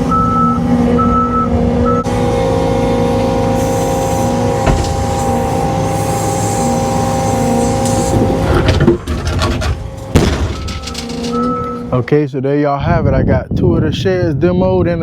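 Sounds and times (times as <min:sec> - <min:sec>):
heavy machine engine running: 0:00.0 - 0:12.1
machine clunks: 0:04.3 - 0:05.5, 0:07.4 - 0:12.0.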